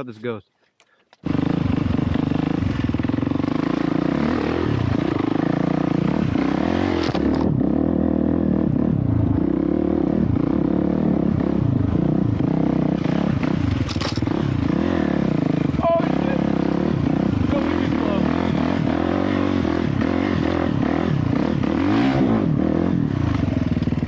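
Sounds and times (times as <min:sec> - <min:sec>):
dirt bike engine under load: 0:13.6 - 0:14.5.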